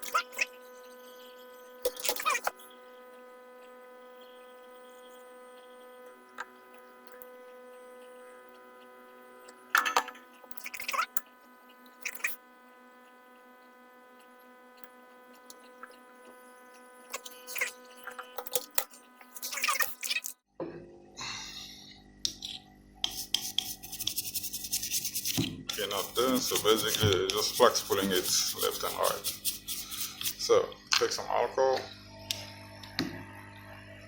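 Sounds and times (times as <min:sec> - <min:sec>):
electrical hum: 0:00.0 - 0:34.0
tools scraping and clicking: 0:01.8 - 0:02.8, 0:09.5 - 0:12.4, 0:16.7 - 0:20.4, 0:22.3 - 0:30.4.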